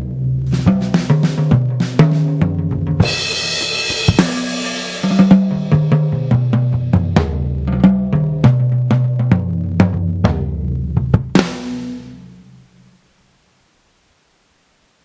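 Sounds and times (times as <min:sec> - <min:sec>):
cymbal crash ringing: 0:03.0 - 0:06.3
electronic drum hits: 0:03.0 - 0:08.0.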